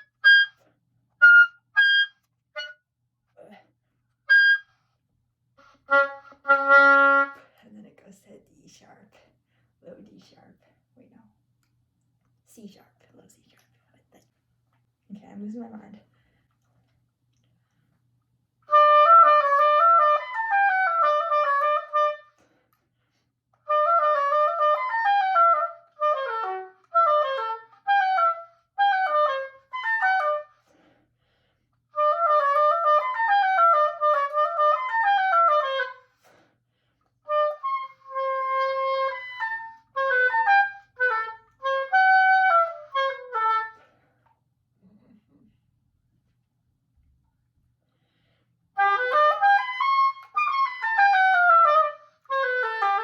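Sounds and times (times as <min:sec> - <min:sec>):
solo oboe playing quick notes: 0:00.0 - 0:00.6, 0:01.2 - 0:02.8, 0:04.3 - 0:04.7.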